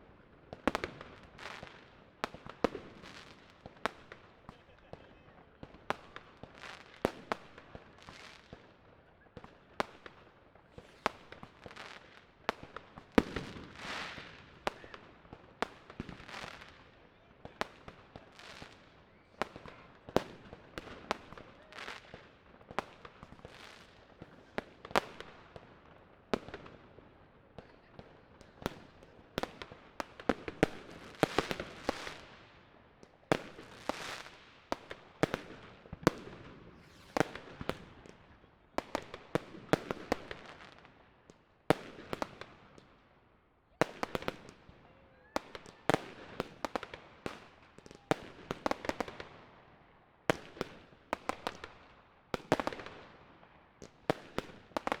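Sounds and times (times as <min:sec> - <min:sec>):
fireworks bangs: 0:33.3 - 0:40.8.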